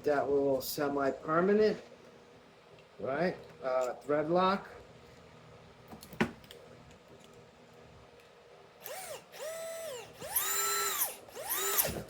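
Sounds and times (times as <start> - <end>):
cordless drill motor whining: 8.8 - 12.0.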